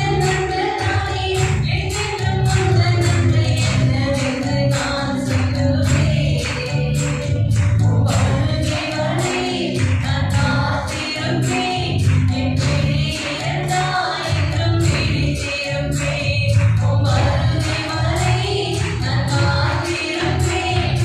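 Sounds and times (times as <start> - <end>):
instrumental backing with beat: 0.0 - 21.0
choir singing: 13.0 - 21.0.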